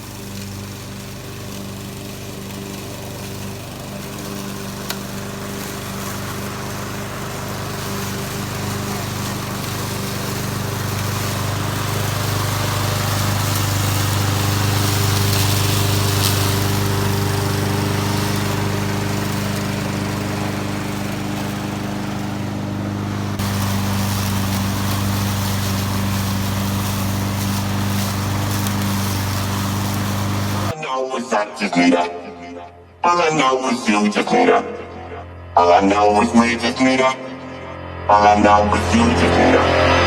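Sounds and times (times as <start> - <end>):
lawn mower engine running: 0.0 - 30.8.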